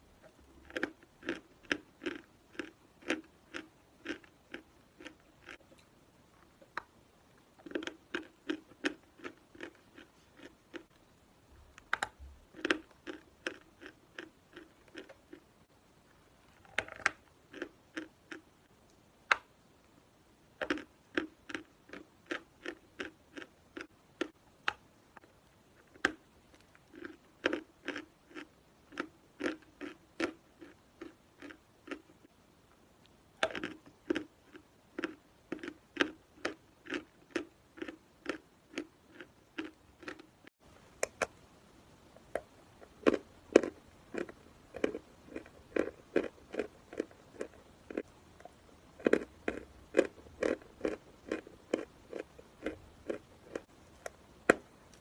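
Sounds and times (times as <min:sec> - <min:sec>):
person chewing chalk: 0:00.6 - 0:05.6, 0:07.6 - 0:10.9, 0:12.6 - 0:15.4, 0:20.6 - 0:24.4, 0:25.8 - 0:32.2, 0:33.4 - 0:40.3, 0:42.8 - 0:55.0.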